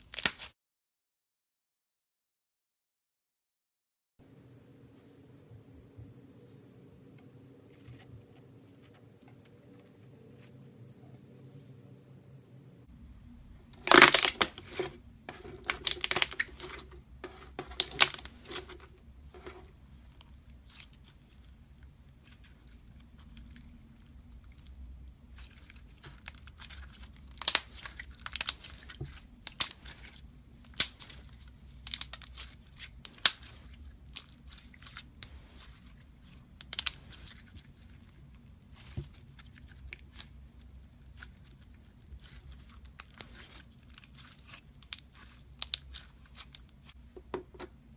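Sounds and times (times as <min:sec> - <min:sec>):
slime crackling and popping: 0:00.0 - 0:00.5, 0:13.8 - 0:16.9, 0:17.8 - 0:18.8, 0:22.2 - 0:47.0.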